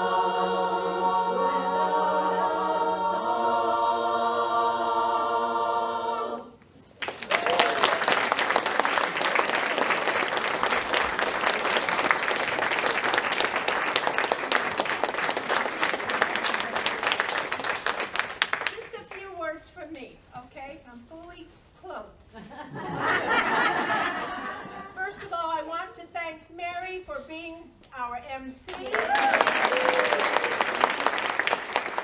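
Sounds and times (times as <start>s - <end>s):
women's a cappella chorus singing: 0.0s - 6.7s
audience whoop: 7.0s - 14.7s, 28.7s - 32.0s
audience applause: 7.0s - 19.0s, 28.7s - 32.0s.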